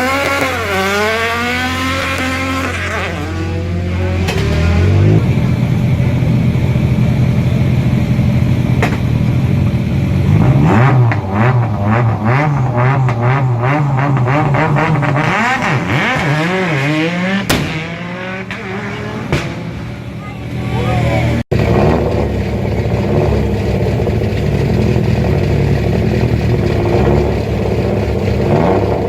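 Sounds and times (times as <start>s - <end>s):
rally car engine revving: 0.0s - 29.0s
loud bangs: 10.9s - 28.3s
sharp cracks: 17.5s - 17.9s.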